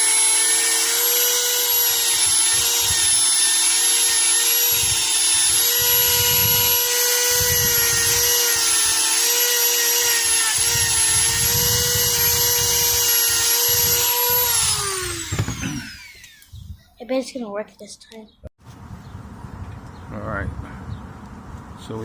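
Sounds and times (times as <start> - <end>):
rotary tool running: 0.0 - 16.5.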